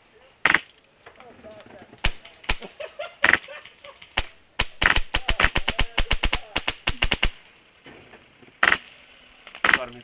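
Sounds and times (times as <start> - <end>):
airsoft gun firing: 0.4 - 0.7, 2.0 - 7.4, 8.6 - 8.9.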